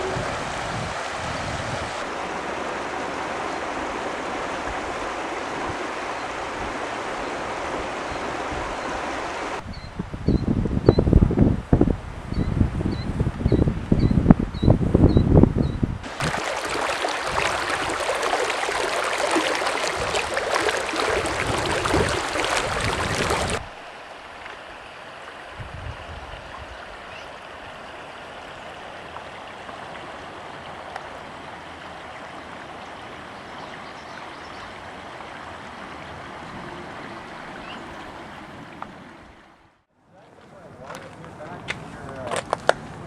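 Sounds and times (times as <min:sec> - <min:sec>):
rushing river water: 0:00.0 - 0:09.6, 0:16.0 - 0:39.9.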